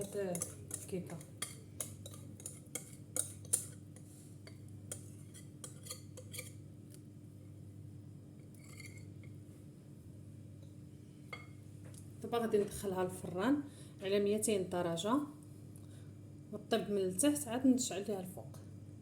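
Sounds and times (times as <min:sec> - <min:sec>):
utensil scraping a mixing bowl: 0:00.0 - 0:06.6
low steady hum: 0:00.0 - 0:19.0.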